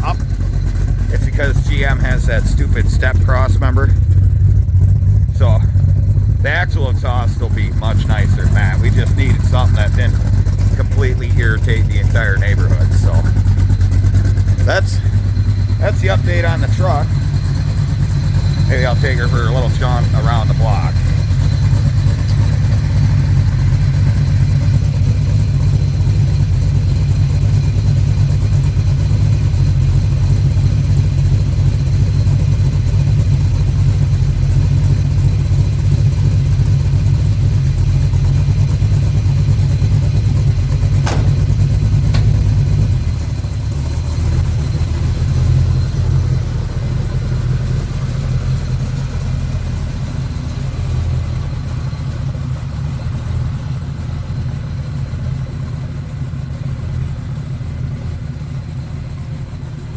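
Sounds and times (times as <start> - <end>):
v-eight engine exhaust rumble: 0.0 - 59.9
sharp clicks: 41.0 - 42.5.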